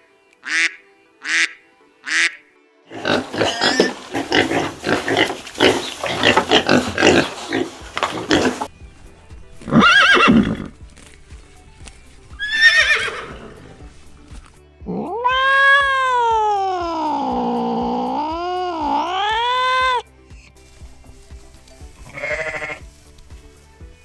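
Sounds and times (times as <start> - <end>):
background music: 0.0 - 24.0
horse neighing: 2.9 - 8.7, 9.6 - 10.8, 12.4 - 13.9, 14.9 - 20.0, 22.1 - 22.8.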